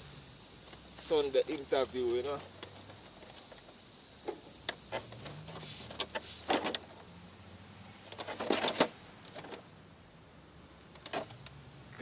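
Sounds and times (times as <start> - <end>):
metal parts clattering: 8.1 - 9.6
metal parts knocking and rattling: 8.1 - 9.6, 11.0 - 11.4.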